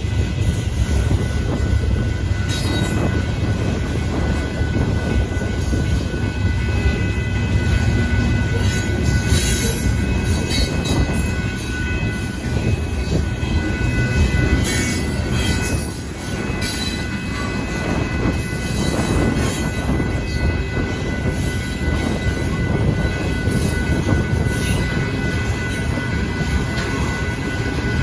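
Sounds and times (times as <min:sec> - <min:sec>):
wheels rumbling on rail: 0:00.0 - 0:28.0
high wheel squeal: 0:00.8 - 0:28.0.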